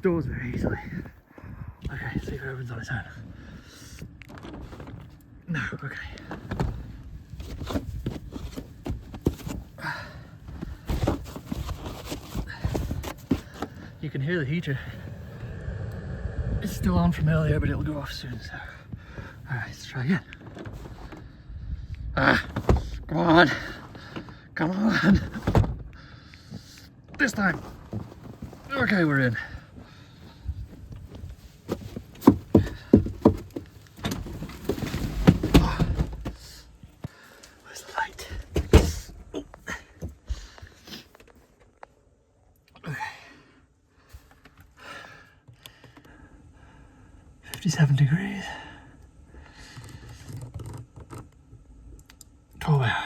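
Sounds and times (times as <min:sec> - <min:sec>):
thumps and scuffs of climbing: 0:00.2 - 0:05.2, 0:05.9 - 0:15.3, 0:17.6 - 0:41.9
low rumble: 0:14.7 - 0:19.1
wind buffeting microphone: 0:14.8 - 0:19.2.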